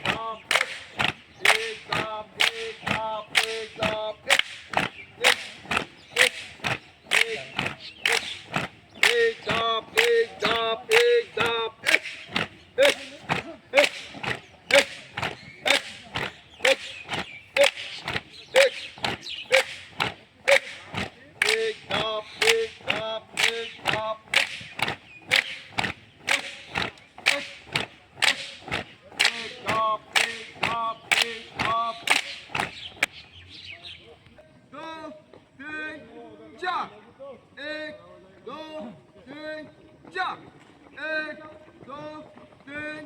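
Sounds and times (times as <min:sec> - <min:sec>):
group clapping in unison: 0:00.0 - 0:33.1.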